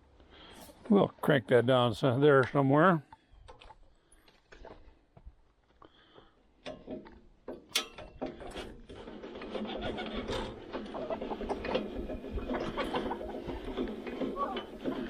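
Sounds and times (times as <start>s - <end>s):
winch rapid mechanical clicking: 9.0s - 15.0s.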